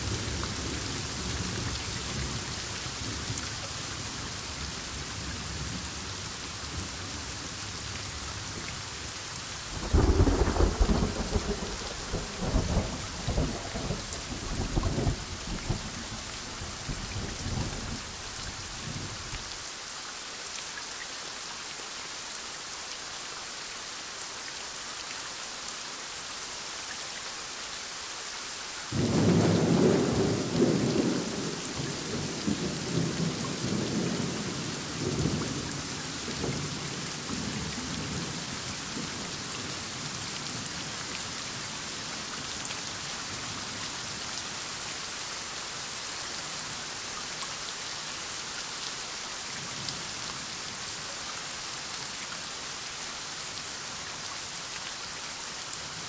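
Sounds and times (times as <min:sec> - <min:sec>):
heavy rain falling: 0:00.0 - 0:56.0
thunder clap and rumble: 0:09.8 - 0:16.2.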